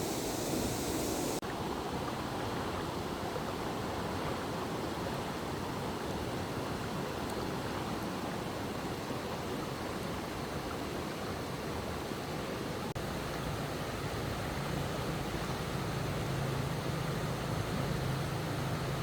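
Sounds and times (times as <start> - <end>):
stream water rushing: 0.0 - 19.0.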